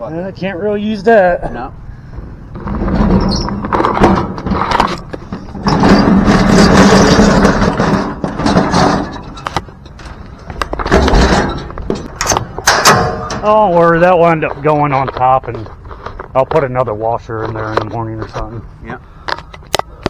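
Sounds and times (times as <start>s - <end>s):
metal appliance scraping: 2.6s - 13.5s
sharp metal knocks: 10.8s - 13.5s.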